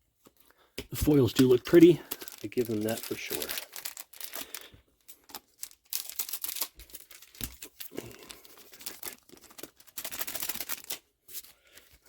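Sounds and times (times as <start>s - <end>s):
foil wrapper crinkling and tearing: 1.0s - 12.0s.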